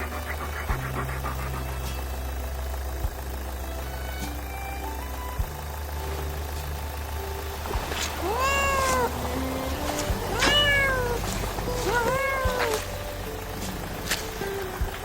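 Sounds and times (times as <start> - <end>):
cat meowing: 8.1 - 13.0.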